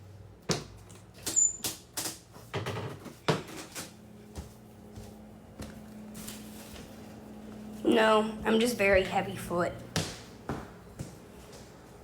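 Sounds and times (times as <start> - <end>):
faint steady hum: 3.1 - 12.0
heavy footsteps on floor: 4.3 - 6.9, 9.9 - 12.0.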